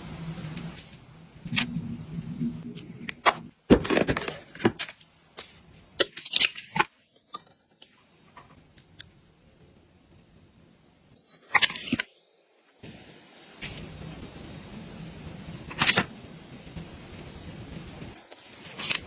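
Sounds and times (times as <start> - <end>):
items clicking and tapping: 3.0 - 9.1.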